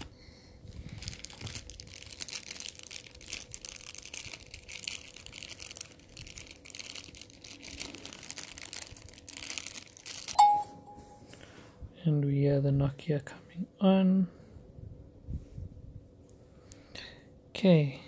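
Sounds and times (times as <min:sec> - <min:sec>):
crinkling phone handling noise: 0:00.7 - 0:11.2
phone power-on tone: 0:10.4 - 0:11.3.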